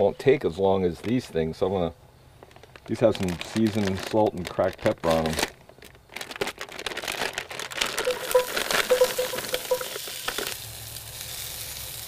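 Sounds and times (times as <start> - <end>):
sprouts frying in a pan: 7.4 - 12.0
short squeaks: 7.8 - 10.6.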